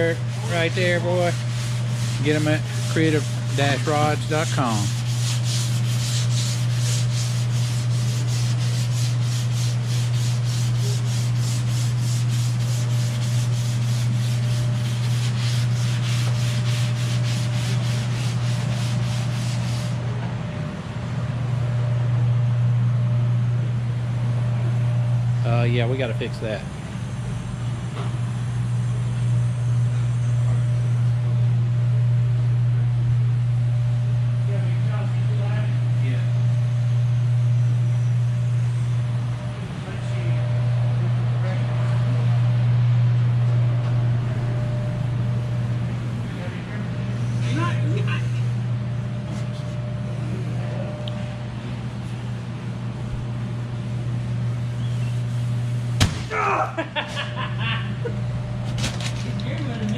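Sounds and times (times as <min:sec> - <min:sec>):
voice: 0:00.0 - 0:01.4, 0:02.2 - 0:04.9, 0:25.5 - 0:26.6
machine humming: 0:00.0 - 0:59.9
sharp knock: 0:56.0 - 0:56.3.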